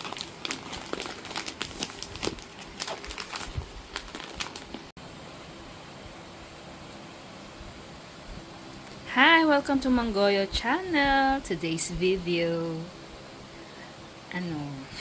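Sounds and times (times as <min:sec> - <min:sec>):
crinkling and crackling: 0:00.0 - 0:04.9
faint hum: 0:00.0 - 0:15.0.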